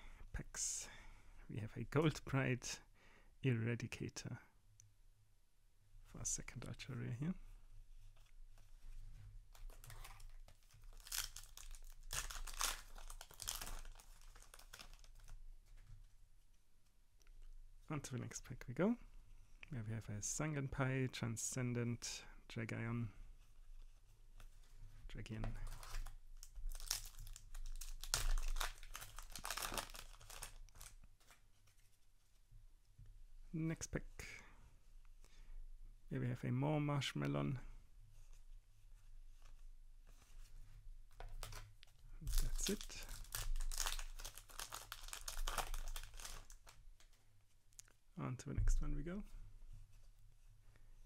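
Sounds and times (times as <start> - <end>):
foil wrapper crinkling and tearing: 9.6 - 15.3, 25.7 - 31.4, 42.3 - 47.1.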